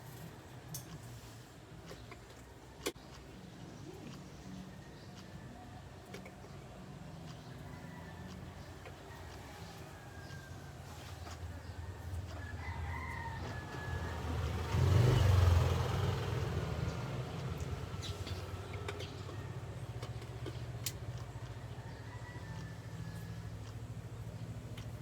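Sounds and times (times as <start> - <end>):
low motor hum: 3.3 - 25.0
rooster crowing: 7.6 - 15.3, 21.6 - 23.6.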